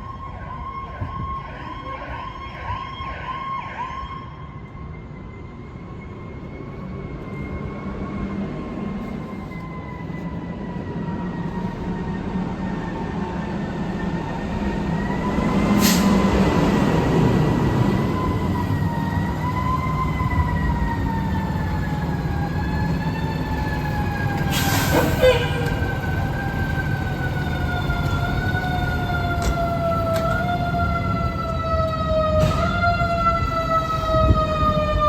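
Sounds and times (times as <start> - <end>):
siren wailing: 0.0 - 35.0
diesel engine rumble: 8.0 - 35.0.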